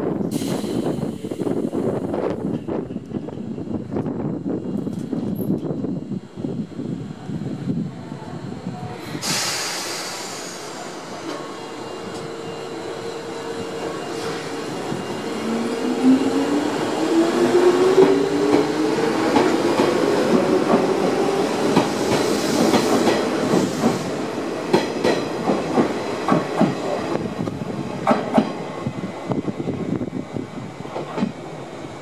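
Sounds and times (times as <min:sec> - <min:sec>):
train wheels clacking on rail joints: 0:24.7 - 0:27.0.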